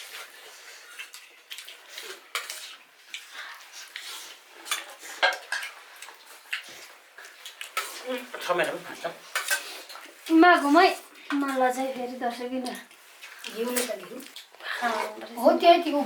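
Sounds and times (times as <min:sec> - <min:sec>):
dishes and utensils clinking: 0:04.6 - 0:06.6, 0:07.2 - 0:10.2.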